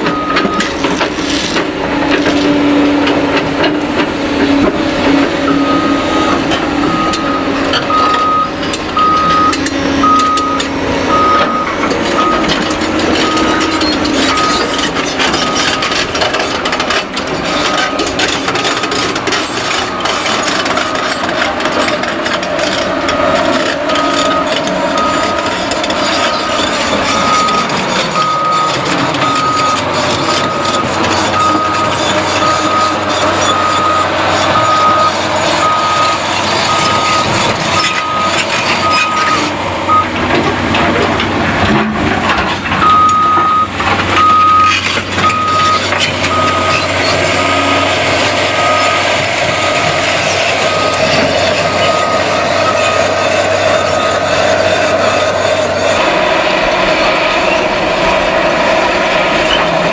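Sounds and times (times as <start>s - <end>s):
diesel machinery running: 0.0s - 59.9s
backup alarm beeping: 5.4s - 16.0s, 26.2s - 40.2s, 42.8s - 54.3s
demolition knocks and clatter: 36.2s - 47.4s.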